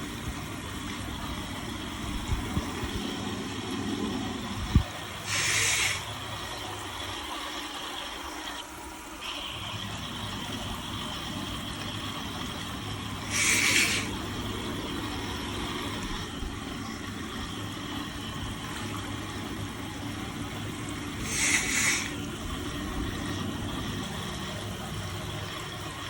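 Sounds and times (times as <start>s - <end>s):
shower water running: 0.0s - 26.0s
short hissy bursts: 5.2s - 6.2s, 13.2s - 14.2s, 21.2s - 22.2s.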